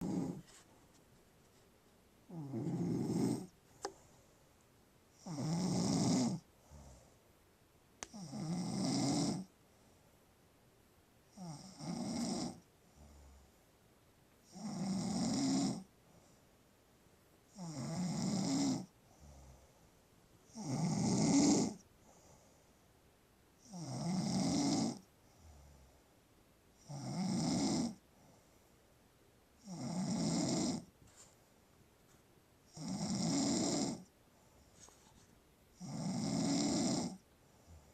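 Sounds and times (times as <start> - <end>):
woman snoring: 0.0 - 0.5, 2.3 - 3.5, 5.2 - 6.9, 8.1 - 9.5, 11.3 - 13.3, 14.4 - 15.9, 17.5 - 19.4, 20.5 - 21.8, 23.6 - 25.1, 26.8 - 28.0, 29.6 - 30.9, 32.7 - 34.1, 35.8 - 37.2
quiet breathing: 0.0 - 10.4, 11.2 - 37.9.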